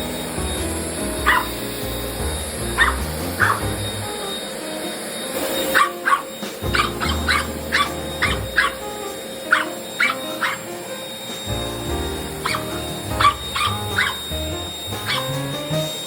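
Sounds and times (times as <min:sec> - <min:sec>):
background music: 0:00.0 - 0:16.0
puppy yapping: 0:01.2 - 0:01.6, 0:02.7 - 0:04.1, 0:05.6 - 0:10.8, 0:12.4 - 0:15.9.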